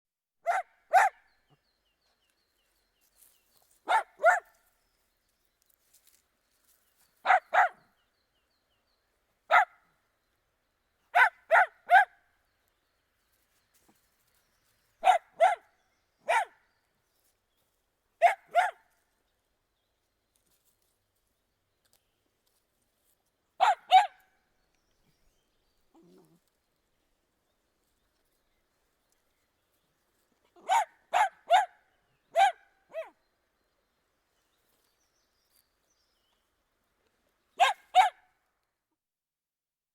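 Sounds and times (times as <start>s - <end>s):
dog barking: 0.4s - 1.3s, 3.8s - 4.6s, 7.2s - 7.8s, 9.5s - 9.8s, 11.1s - 12.2s, 15.0s - 16.6s, 18.2s - 18.9s, 23.6s - 24.3s, 30.6s - 33.2s, 37.6s - 38.3s.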